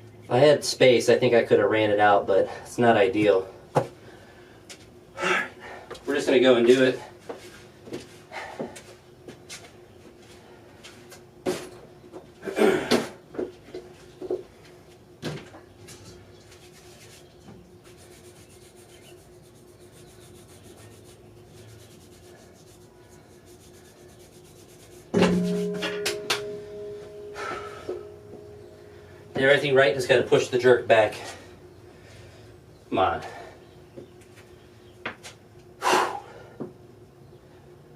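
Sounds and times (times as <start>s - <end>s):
faint steady hum: 0.0s - 37.9s
loud thump: 25.2s - 28.5s.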